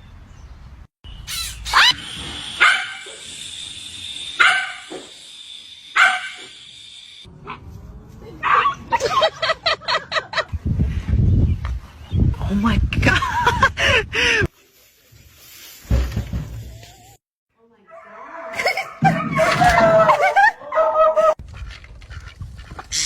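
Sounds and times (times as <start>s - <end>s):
dog barking: 2.6s - 3.2s, 4.4s - 4.9s, 6.0s - 6.5s.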